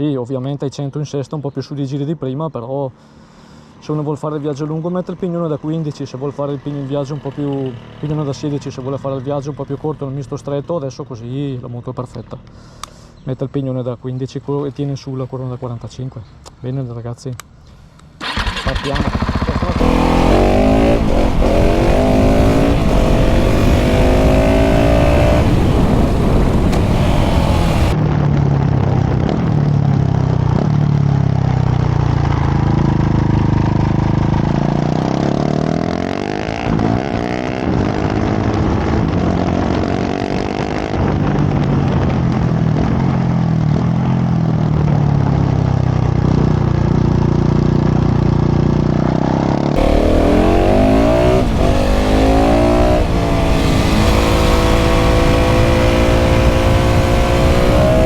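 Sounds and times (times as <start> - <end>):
motorcycle engine accelerating: 18.2 - 58.0.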